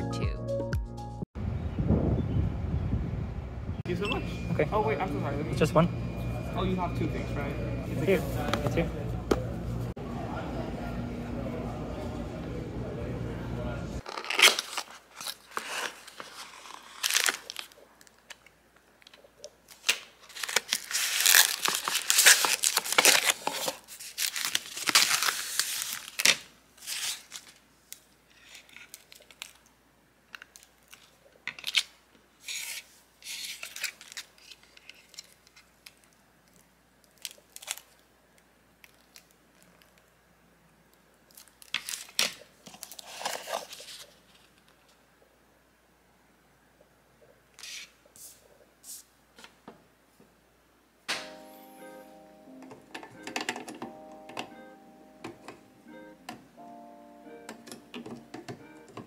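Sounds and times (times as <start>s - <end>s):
packaging being torn and crinkled: 14.0s - 18.5s, 19.6s - 29.7s, 30.3s - 38.1s, 38.8s - 40.1s, 41.3s - 44.2s.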